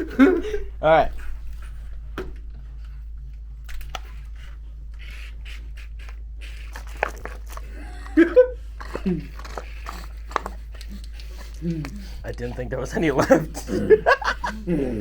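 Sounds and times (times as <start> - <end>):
low electrical hum: 0.0 - 15.0
objects being handled: 6.1 - 7.8.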